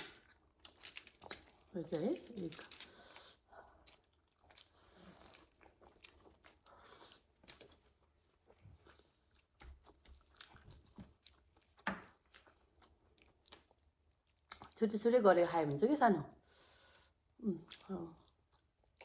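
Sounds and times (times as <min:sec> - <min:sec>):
person chewing food: 0:02.6 - 0:14.8, 0:16.6 - 0:19.0.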